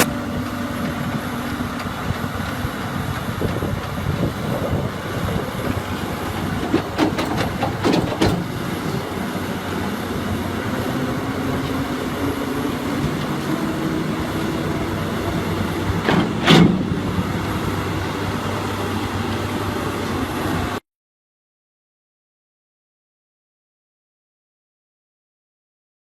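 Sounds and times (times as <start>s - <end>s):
diesel engine running: 0.0s - 20.8s
loud metal clank: 6.6s - 8.7s, 16.0s - 17.0s.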